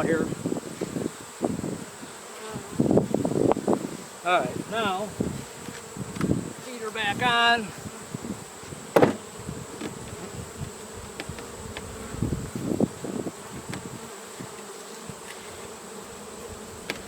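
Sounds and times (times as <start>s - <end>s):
honeybees buzzing: 0.0s - 17.0s
hive equipment knocks: 8.9s - 10.3s.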